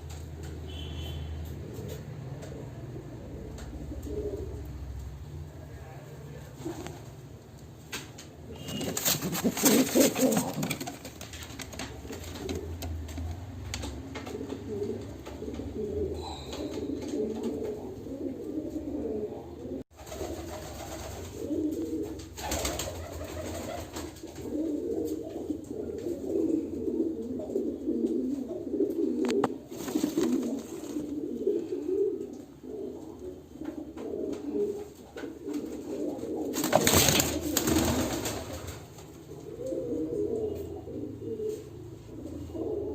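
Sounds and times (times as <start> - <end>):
pigeons cooing: 1.5 - 5.2, 8.4 - 42.9.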